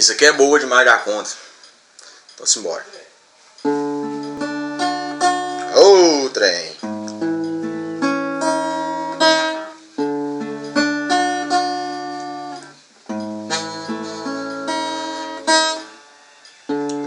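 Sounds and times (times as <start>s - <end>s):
acoustic guitar chords: 3.6s - 15.9s.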